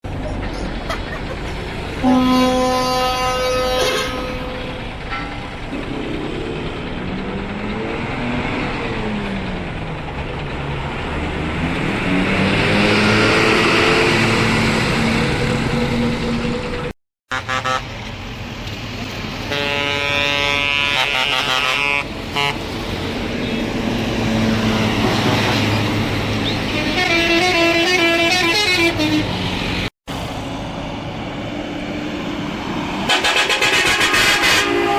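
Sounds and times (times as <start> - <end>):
bus engine revving: 0.1 - 34.9
bus horn: 2.0 - 5.6, 17.3 - 18.0, 19.5 - 22.8, 25.0 - 25.8, 26.4 - 29.6, 33.1 - 34.9.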